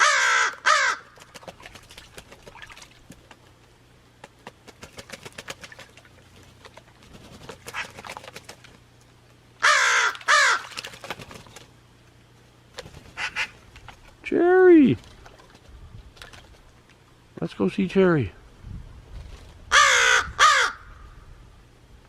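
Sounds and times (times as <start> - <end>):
crow cawing: 0.0 - 1.2, 9.6 - 10.7, 13.2 - 13.5, 19.7 - 21.2.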